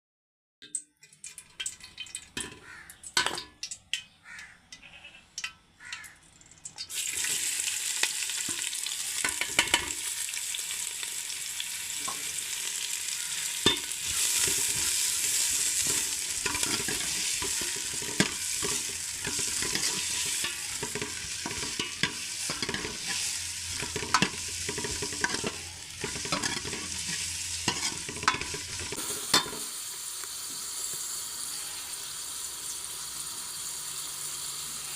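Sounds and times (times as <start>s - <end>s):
food sizzling in a pan: 6.8s - 34.9s
utensil scraping a pan: 13.2s - 29.7s.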